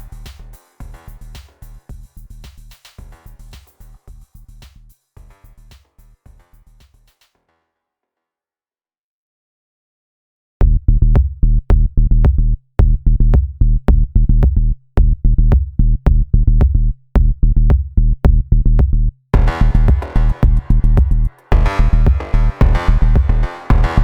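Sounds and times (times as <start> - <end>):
deep drum-machine beat: 0.0 - 7.2, 10.6 - 24.0
bright synthesizer: 19.4 - 24.0.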